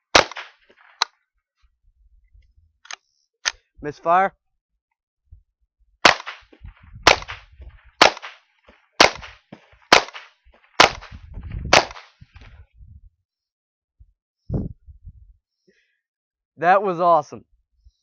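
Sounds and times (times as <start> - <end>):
rifle shots: 0.0 - 1.1, 6.0 - 8.4, 9.0 - 12.2.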